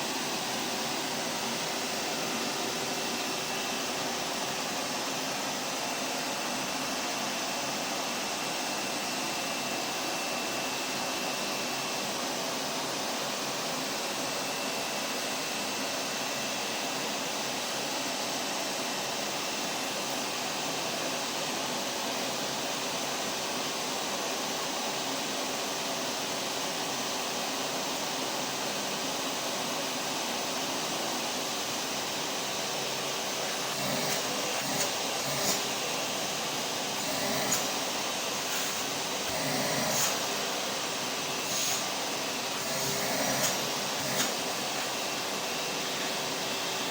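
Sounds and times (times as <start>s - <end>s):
vacuum cleaner motor running: 0.0s - 46.9s
faint high whine: 30.0s - 46.9s.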